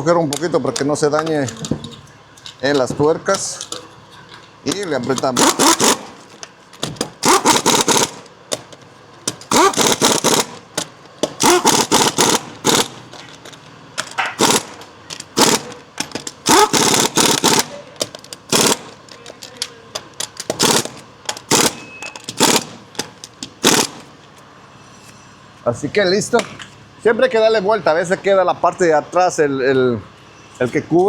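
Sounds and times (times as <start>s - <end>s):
impact wrench hammering: 4.7s - 24.1s.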